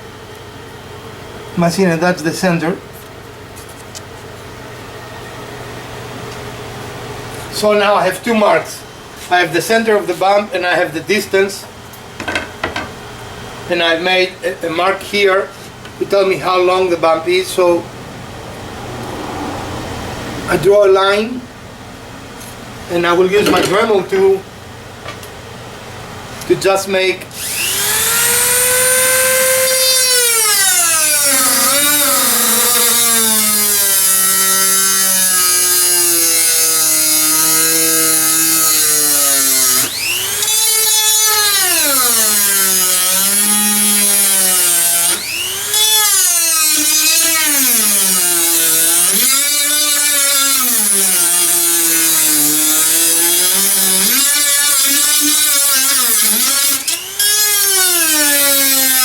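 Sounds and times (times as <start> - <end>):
rotary tool grinding: 27.4 - 59.0.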